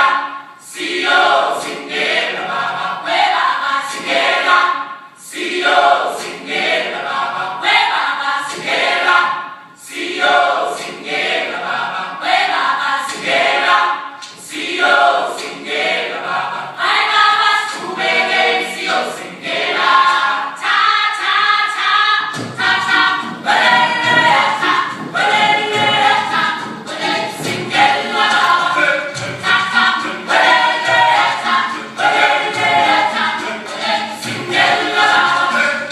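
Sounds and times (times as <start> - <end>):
gospel choir singing: 0.0 - 35.9
sharp percussive beat: 22.3 - 35.9.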